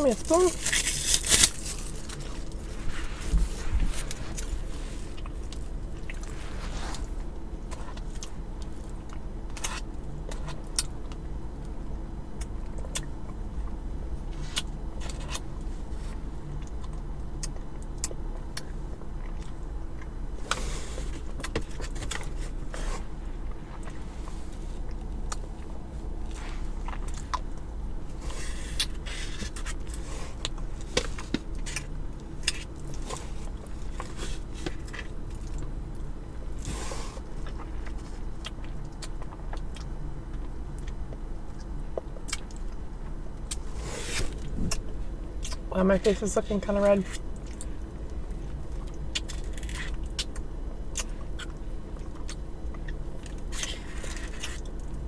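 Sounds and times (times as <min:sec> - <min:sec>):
biting and chewing: 0:00.0 - 0:11.2, 0:24.8 - 0:45.7, 0:47.1 - 0:55.0
steady low hum: 0:00.0 - 0:55.0.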